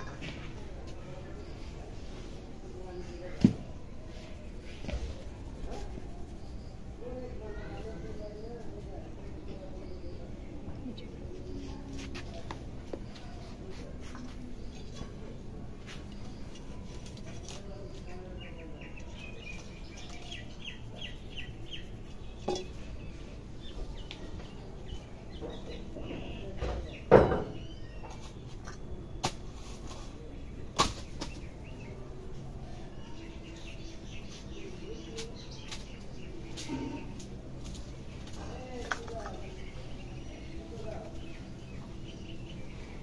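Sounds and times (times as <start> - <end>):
hands rubbing oiled hair: 4.1 - 6.8, 19.5 - 22.4.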